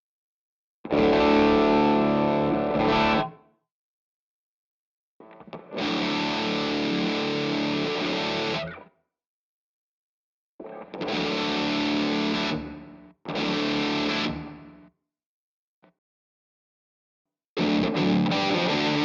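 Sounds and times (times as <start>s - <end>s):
distorted electric guitar chords: 0.9s - 3.4s, 5.5s - 8.7s, 10.7s - 14.7s, 17.6s - 19.0s.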